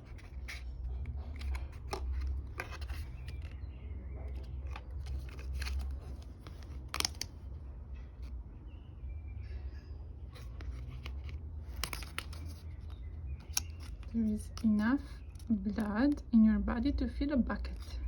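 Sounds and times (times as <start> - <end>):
book pages and flaps rustling: 0.0 - 3.6, 4.2 - 7.5, 10.3 - 15.5
card flap snapping: 6.6 - 7.3.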